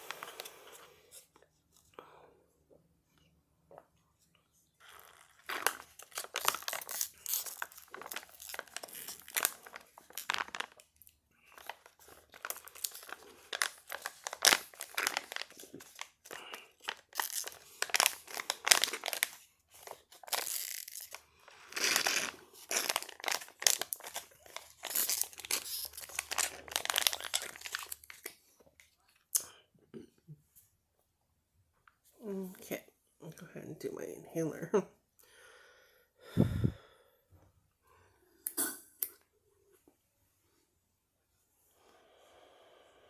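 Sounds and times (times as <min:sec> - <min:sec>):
thin material crinkling and rustling: 0:04.8 - 0:29.0.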